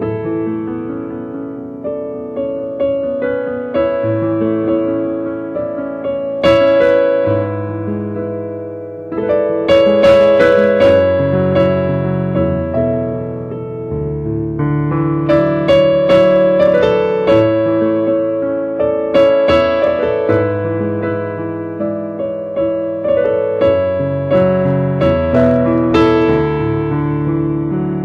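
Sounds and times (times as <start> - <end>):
electric piano chords: 0.0 - 28.0
single piano notes: 0.0 - 28.0.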